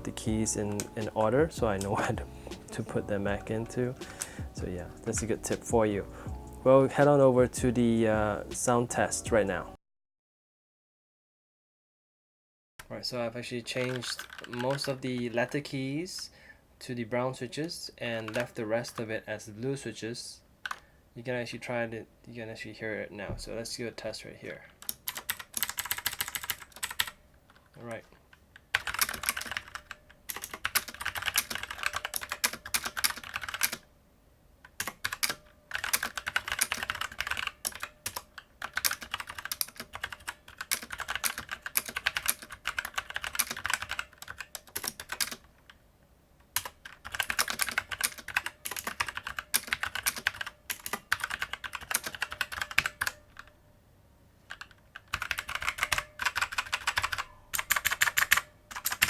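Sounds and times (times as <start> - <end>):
mechanical keyboard typing: 0.0 - 5.2, 13.7 - 15.6, 18.2 - 19.0, 24.8 - 27.2, 28.7 - 33.8, 34.7 - 45.5, 46.5 - 53.5, 54.5 - 59.0.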